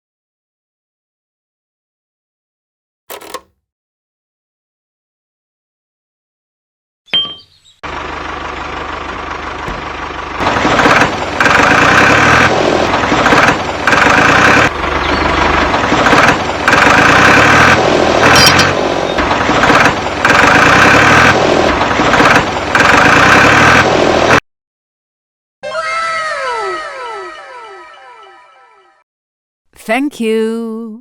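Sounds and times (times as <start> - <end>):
small machine motor surging: 10.8 - 15.4, 16.0 - 18.7.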